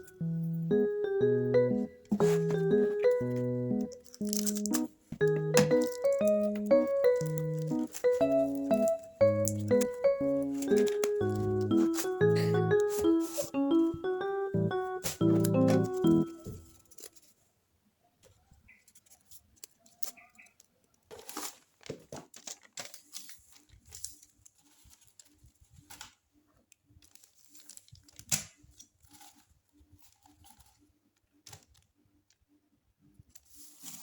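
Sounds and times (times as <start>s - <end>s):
packaging rustling and crinkling: 2.2s - 9.0s, 21.1s - 26.3s, 26.9s - 31.8s.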